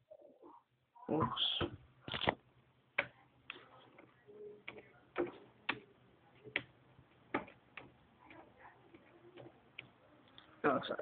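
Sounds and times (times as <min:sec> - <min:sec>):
computer keyboard typing: 0:04.6 - 0:09.9.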